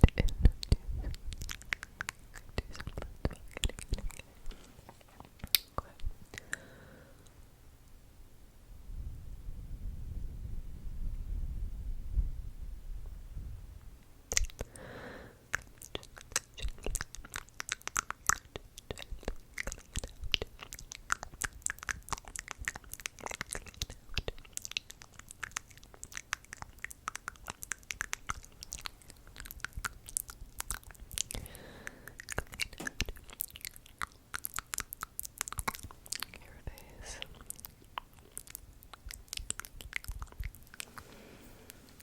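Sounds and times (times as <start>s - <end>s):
wet mouth clicks and smacks: 0.0s - 4.3s, 5.0s - 6.6s, 14.3s - 14.7s, 15.5s - 31.5s, 32.1s - 41.1s.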